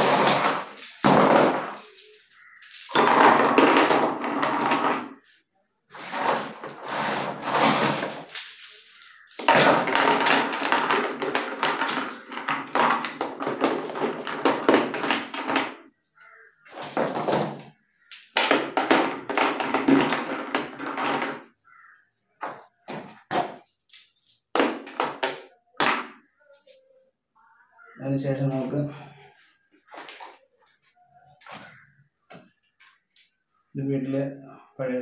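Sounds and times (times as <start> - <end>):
river stones clattering together: 0.0 - 5.2, 7.3 - 15.8.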